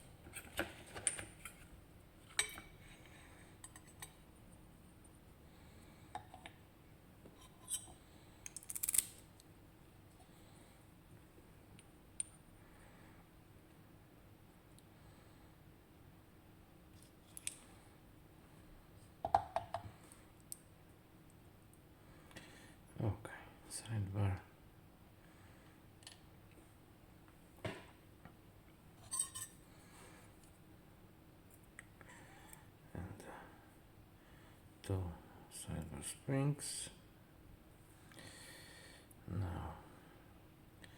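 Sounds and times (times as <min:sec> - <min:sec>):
small metal lock parts clicking: 0:08.5 - 0:09.2.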